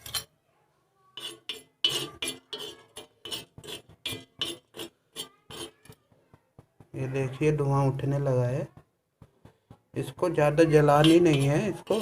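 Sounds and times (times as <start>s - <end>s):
metal utensil clinking and scraping: 0.0s - 0.3s, 1.2s - 6.0s, 10.8s - 12.0s.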